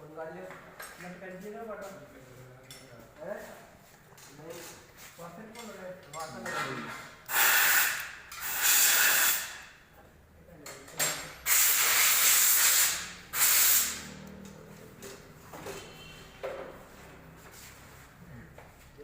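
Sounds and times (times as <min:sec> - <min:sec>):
pressurised spray hissing: 0:07.3 - 0:09.6, 0:11.5 - 0:14.1.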